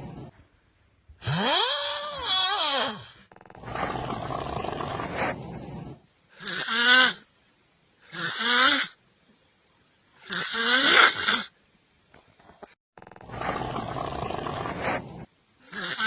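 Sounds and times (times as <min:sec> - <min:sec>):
person snoring: 0:01.2 - 0:03.3, 0:10.2 - 0:11.5, 0:13.1 - 0:16.0.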